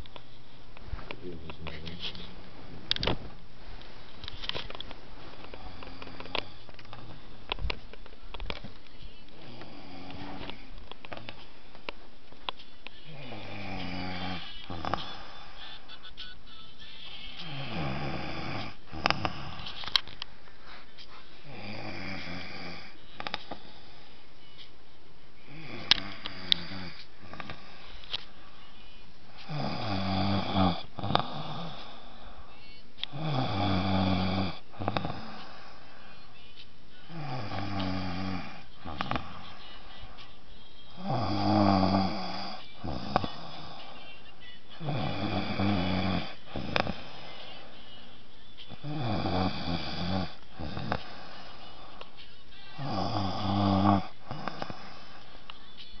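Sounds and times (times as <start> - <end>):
man snoring: 5.5 - 6.6, 9.4 - 10.7, 13.0 - 15.6, 17.4 - 19.8, 21.4 - 24.0, 25.4 - 27.9, 29.4 - 32.5, 33.1 - 36.0, 37.1 - 39.6, 41.0 - 44.0, 44.8 - 47.6, 48.7 - 52.0, 52.8 - 55.4.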